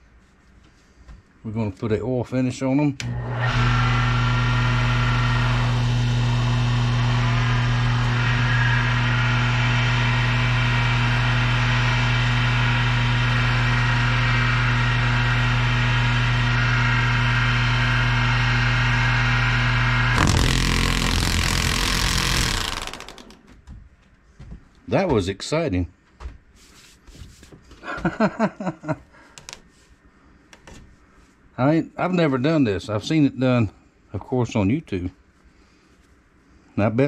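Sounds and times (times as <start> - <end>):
power tool motor humming: 3.0 - 11.5, 14.7 - 23.5.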